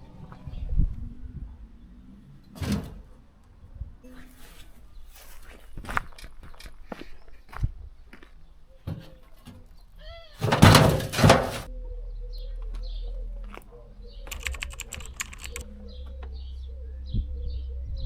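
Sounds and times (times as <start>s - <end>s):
crash of impacts and scraping: 10.4s - 11.7s
knocks and rattles: 10.4s - 11.7s
small birds chirping: 11.7s - 18.0s.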